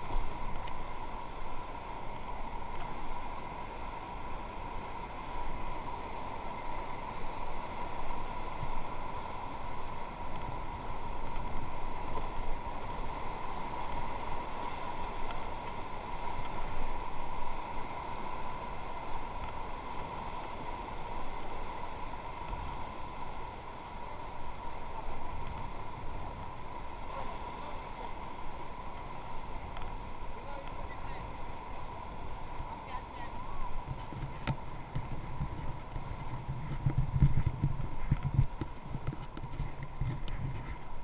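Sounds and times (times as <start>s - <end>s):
river water rushing: 0.0s - 41.0s.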